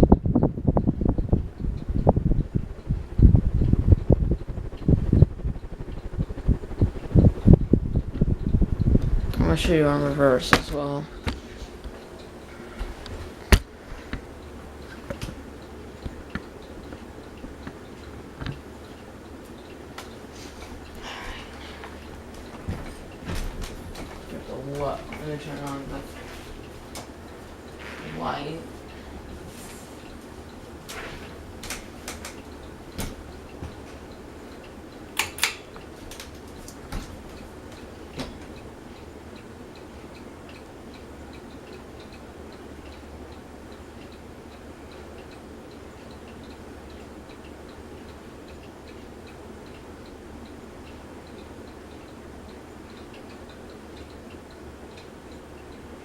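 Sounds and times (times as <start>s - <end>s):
ceiling fan humming: 0.0s - 56.0s
sharp clicks: 2.3s - 9.5s, 35.2s - 36.8s
light ticks: 3.6s - 21.0s, 21.6s - 56.0s.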